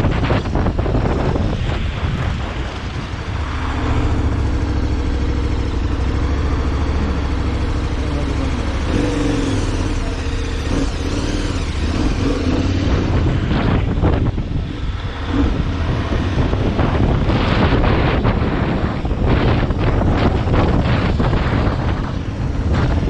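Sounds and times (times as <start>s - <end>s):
vehicle engine running: 0.0s - 23.0s
wind noise on microphone: 0.0s - 23.0s.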